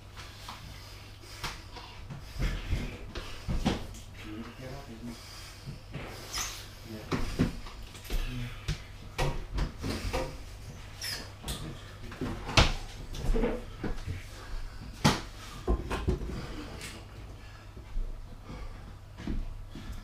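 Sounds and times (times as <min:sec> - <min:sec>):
objects knocking and clattering: 0:15.0 - 0:16.8.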